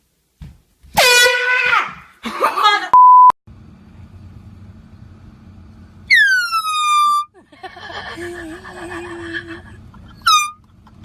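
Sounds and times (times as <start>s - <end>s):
person yelling: 1.0s - 2.1s
censor bleep: 3.0s - 3.4s.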